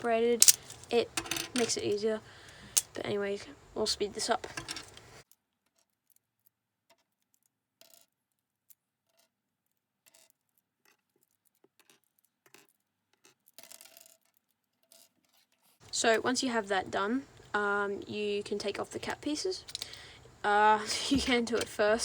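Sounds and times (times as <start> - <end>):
plastic pieces clicking: 0.3 - 3.0, 4.3 - 5.1, 19.6 - 20.1.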